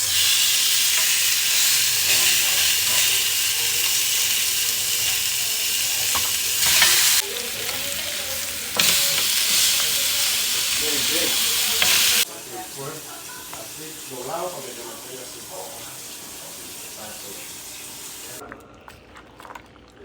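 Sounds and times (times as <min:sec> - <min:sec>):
food sizzling in a pan: 0:00.0 - 0:18.4.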